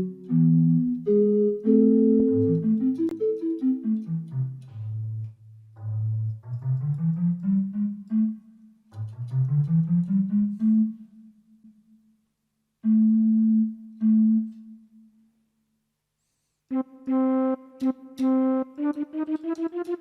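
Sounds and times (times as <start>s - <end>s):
electronic keyboard organ tone: 0.0s - 4.1s.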